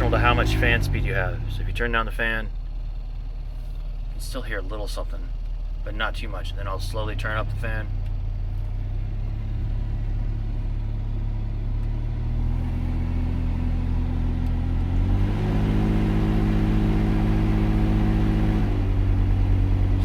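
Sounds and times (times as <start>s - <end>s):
car air conditioning hum: 0.0s - 14.6s.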